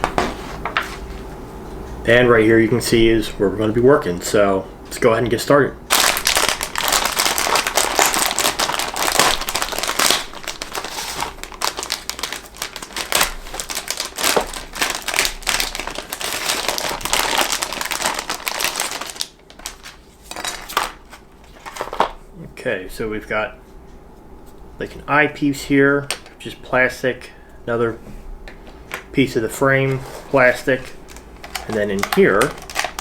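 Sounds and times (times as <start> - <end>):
packaging crinkling and rustling: 5.9 - 22.2, 29.8 - 33.0.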